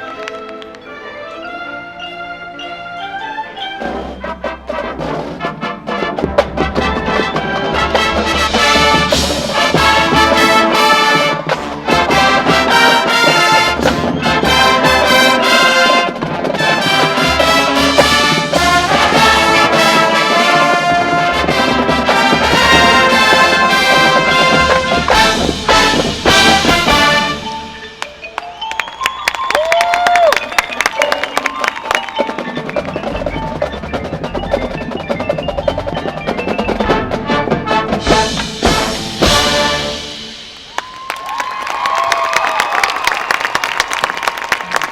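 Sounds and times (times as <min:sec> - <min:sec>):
drums: 0:03.7 - 0:28.5, 0:29.5 - 0:44.9
marching band brass chords: 0:03.8 - 0:28.0, 0:31.4 - 0:41.0.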